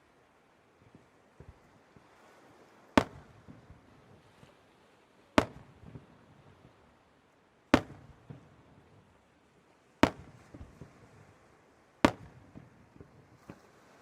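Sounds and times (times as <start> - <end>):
firework shells bursting: 3.0 - 3.6, 5.4 - 6.0, 7.8 - 8.5, 10.0 - 10.9, 12.0 - 12.9.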